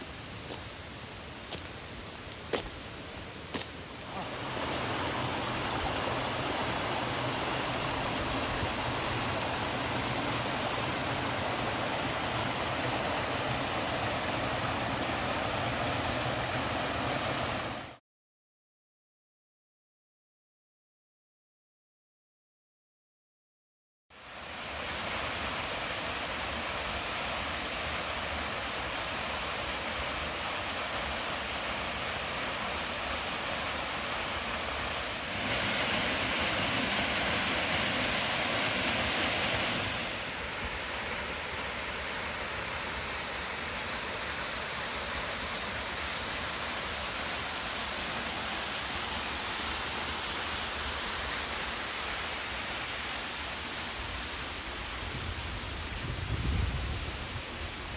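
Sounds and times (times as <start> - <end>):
waterfall rushing: 4.0 - 18.0, 24.2 - 55.0.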